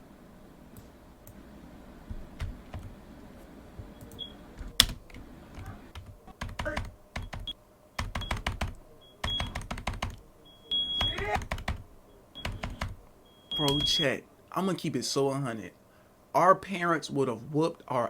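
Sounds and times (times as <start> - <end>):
computer keyboard typing: 2.1 - 3.0, 3.8 - 10.2, 10.9 - 14.0
short high beeps: 13.3 - 14.1.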